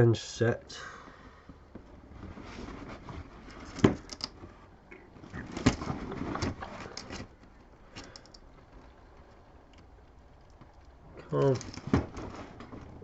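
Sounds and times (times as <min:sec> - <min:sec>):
cardboard box rustling and scraping: 0:01.9 - 0:04.6, 0:05.2 - 0:07.4.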